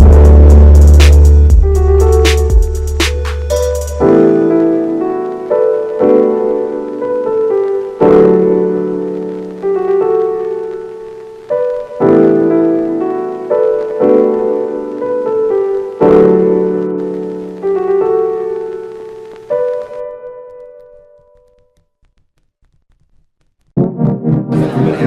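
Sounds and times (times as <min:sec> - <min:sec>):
soft piano chords: 0:00.0 - 0:21.8.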